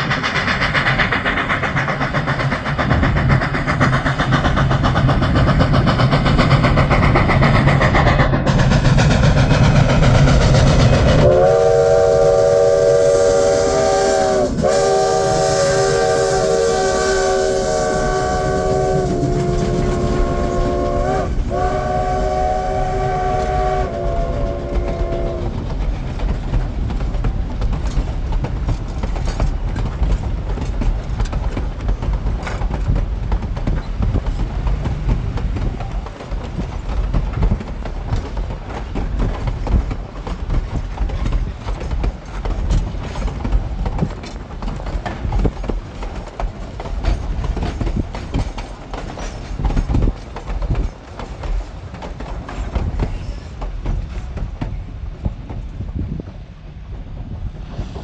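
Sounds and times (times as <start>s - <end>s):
train wheels clattering over rail joints: 0.0s - 58.0s
steam locomotive chime whistle: 11.0s - 25.6s.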